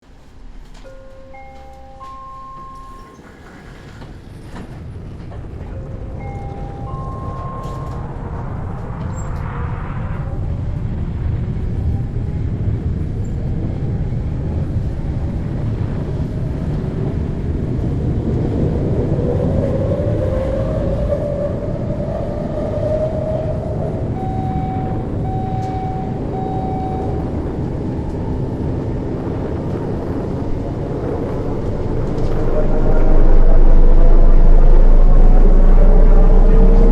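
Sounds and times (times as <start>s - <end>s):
faint rising tone: 0.5s - 4.0s, 5.8s - 10.8s, 22.0s - 29.0s, 31.8s - 36.9s
short beeps: 0.9s - 3.3s, 6.2s - 8.4s, 24.2s - 27.7s.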